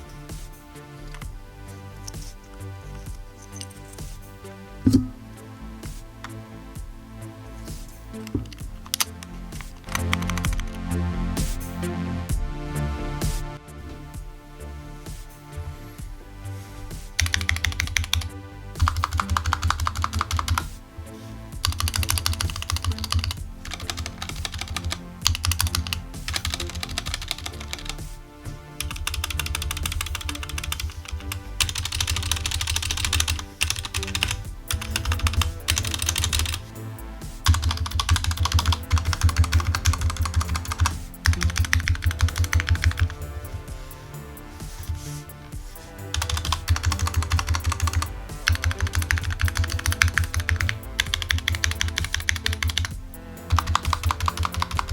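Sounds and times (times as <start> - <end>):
background music: 0.0 - 54.9
mechanical keyboard key clacks: 17.2 - 20.6, 21.7 - 28.0, 28.8 - 36.6, 37.4 - 43.2, 46.2 - 52.9, 53.5 - 54.9.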